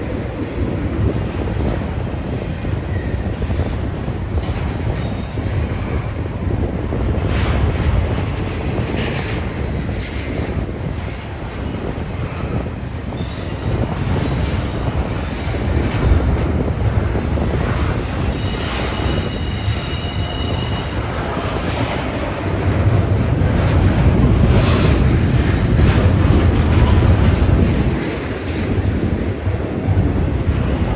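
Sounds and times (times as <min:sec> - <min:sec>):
freight train rumbling: 0:00.0 - 0:30.9
steel wheels squealing: 0:13.1 - 0:16.7, 0:17.4 - 0:22.0.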